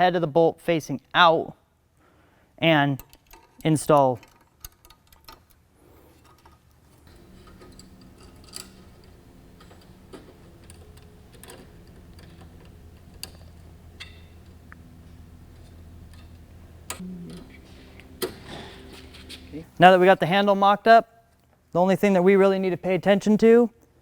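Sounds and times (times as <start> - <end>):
clicks and taps of bolts and nuts: 3.0 - 5.6
steady low hum: 5.7 - 21.0.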